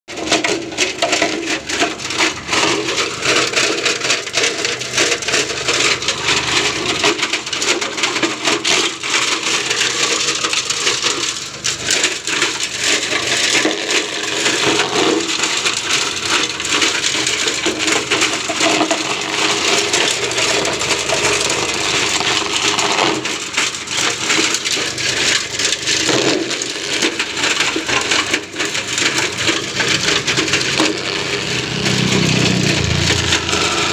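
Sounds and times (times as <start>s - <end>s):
grinding machine motor hum: 1.6s - 33.9s
material crackling and snapping: 12.6s - 33.9s.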